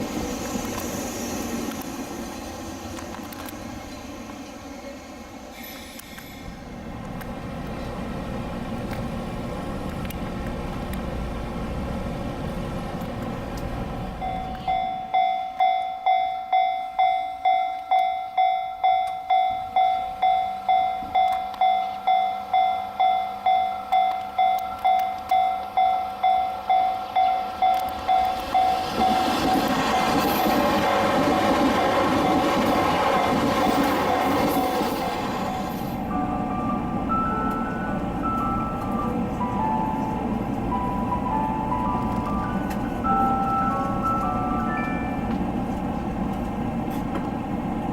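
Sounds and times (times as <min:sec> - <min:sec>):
train running noise: 0:00.0 - 0:15.7, 0:16.9 - 0:47.9
level-crossing alarm bell ringing: 0:14.2 - 0:45.6.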